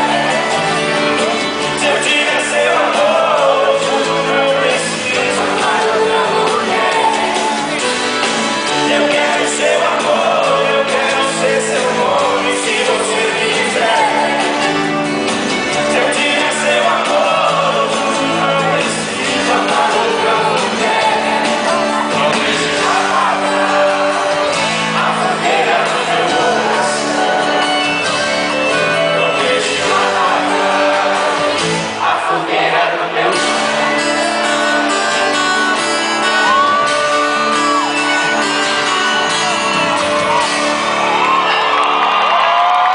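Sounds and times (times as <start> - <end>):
duo singing with band: 0.0 - 42.9
audience shouts and whoops: 6.9 - 8.1, 33.9 - 42.9.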